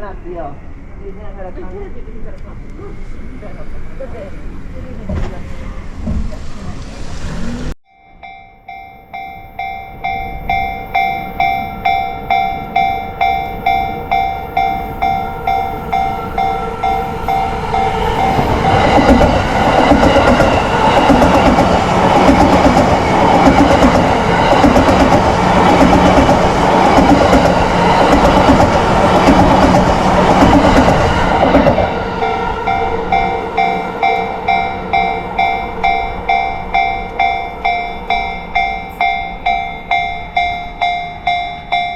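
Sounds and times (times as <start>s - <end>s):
electric train rushing past: 0.0s - 7.8s, 8.7s - 41.9s
level-crossing bell dinging: 7.8s - 21.6s, 32.1s - 41.9s
train wheels clattering on rails: 12.3s - 32.0s.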